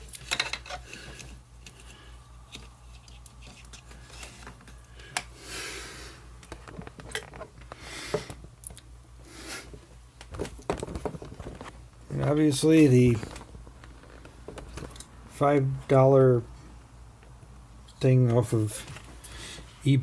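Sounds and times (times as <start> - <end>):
plastic parts and cable rustling: 0.0 - 5.4, 6.4 - 8.8, 9.7 - 15.1
steady low hum: 0.0 - 20.0.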